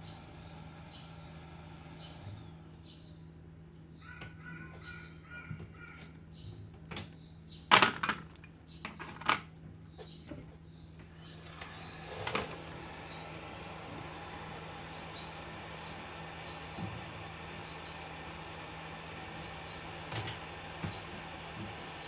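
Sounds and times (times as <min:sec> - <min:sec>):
steady low hum: 0:00.0 - 0:04.0, 0:11.0 - 0:22.0.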